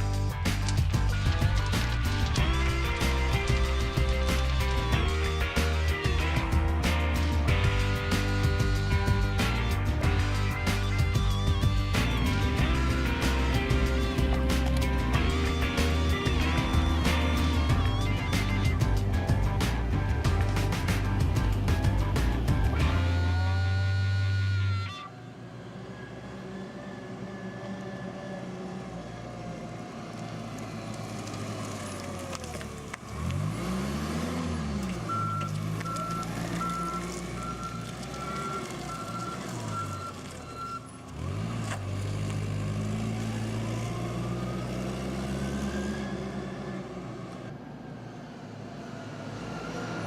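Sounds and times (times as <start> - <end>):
vehicle engine revving: 0.0 - 24.9, 25.6 - 47.6
reversing alarm beeping: 35.1 - 41.0.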